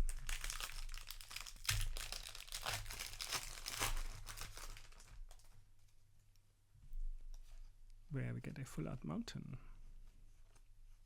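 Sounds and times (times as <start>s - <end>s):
foil wrapper crinkling: 0.0s - 5.6s.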